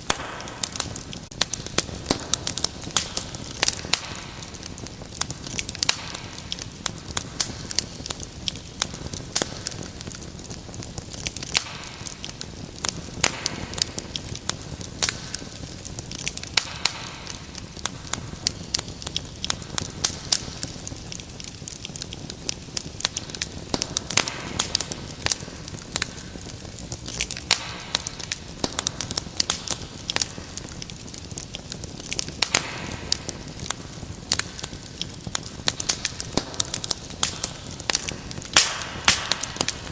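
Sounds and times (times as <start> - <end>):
fire hiss: 0.0 - 39.9
wood fire crackling: 0.0 - 39.9.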